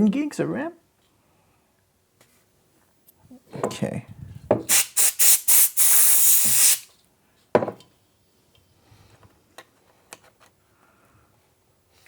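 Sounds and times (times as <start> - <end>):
rushing hiss: 4.7 - 6.9.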